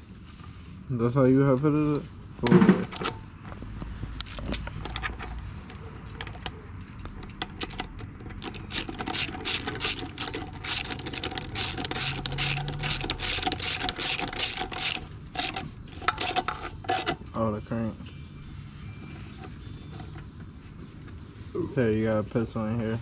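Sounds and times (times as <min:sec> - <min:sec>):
metal scraping and handling: 0:01.4 - 0:17.7, 0:18.4 - 0:21.3
ratchet wrench clicking: 0:07.4 - 0:17.2.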